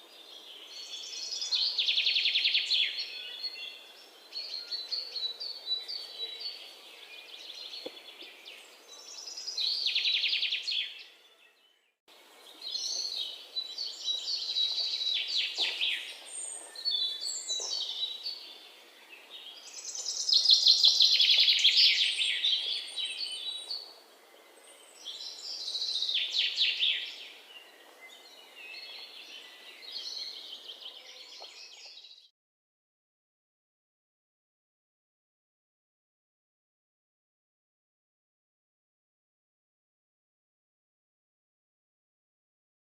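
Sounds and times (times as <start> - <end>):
songbirds chirping and singing: 0.0 - 32.3.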